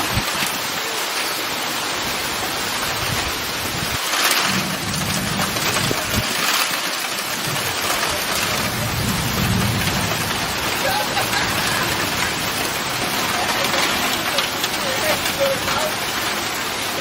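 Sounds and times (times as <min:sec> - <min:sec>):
heavy rain falling: 0:00.0 - 0:17.0
low rumble: 0:03.0 - 0:06.3, 0:07.4 - 0:13.4.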